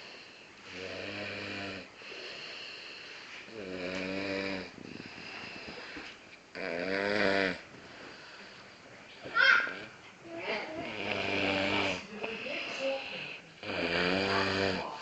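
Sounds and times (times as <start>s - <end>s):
soft breathing: 0.0s - 1.0s, 1.8s - 6.7s, 7.6s - 15.0s
woman snoring: 0.0s - 2.6s, 3.5s - 6.0s, 6.6s - 7.6s, 10.6s - 15.0s.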